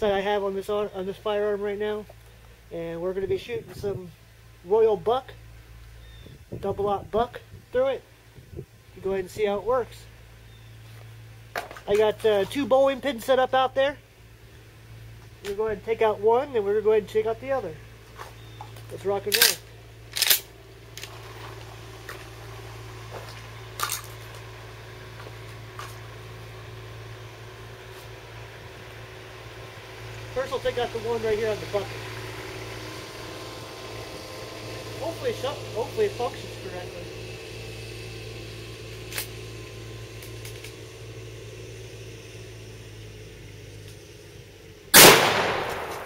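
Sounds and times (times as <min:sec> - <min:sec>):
steady low hum: 0:00.0 - 0:46.0
sharp crack: 0:18.8 - 0:21.6, 0:45.0 - 0:46.0
metallic clicks of shotgun: 0:19.3 - 0:21.1.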